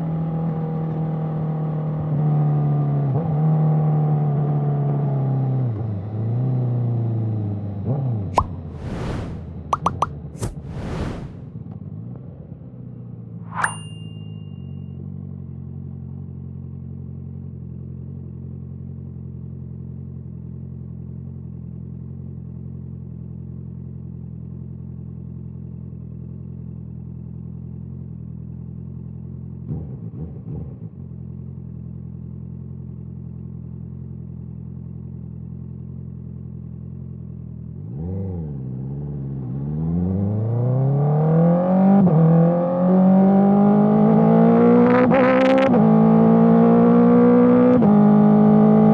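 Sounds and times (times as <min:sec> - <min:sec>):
motorcycle accelerating: 0:42.1 - 0:48.9.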